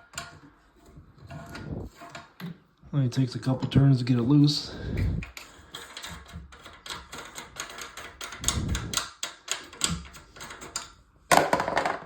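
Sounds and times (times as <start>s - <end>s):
nut unscrewing clicking and tapping: 5.2s - 11.0s.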